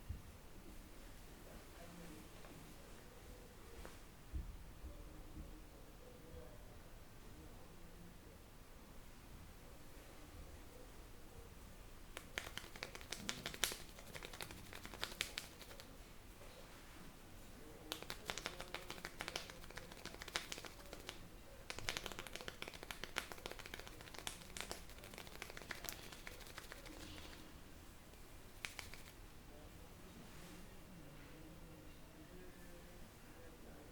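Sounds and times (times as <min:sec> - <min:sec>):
light taps on scalp: 0:12.1 - 0:15.9, 0:17.9 - 0:27.4, 0:28.1 - 0:29.2
hands rubbing hair crackling: 0:12.2 - 0:16.0, 0:17.9 - 0:27.5, 0:28.1 - 0:29.2.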